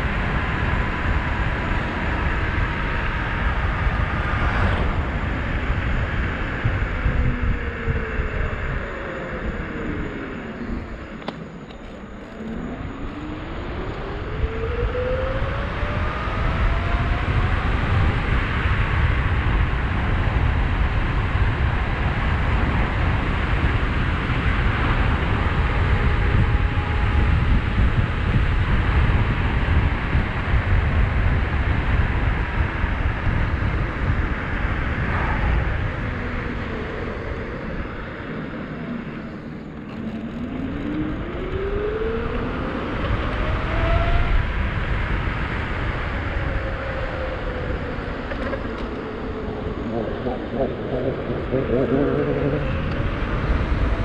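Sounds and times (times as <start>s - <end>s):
wind rushing over microphone: 0.0s - 54.0s.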